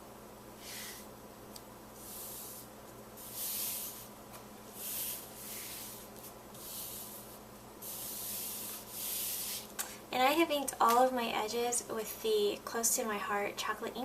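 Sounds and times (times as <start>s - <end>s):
hand rubbing across paper: 2.0s - 4.1s, 4.7s - 9.7s.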